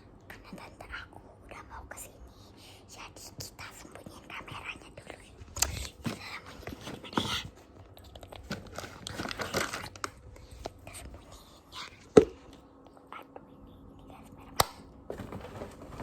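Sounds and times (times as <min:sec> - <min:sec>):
crinkling and rustling: 0:05.0 - 0:12.6, 0:15.0 - 0:16.0.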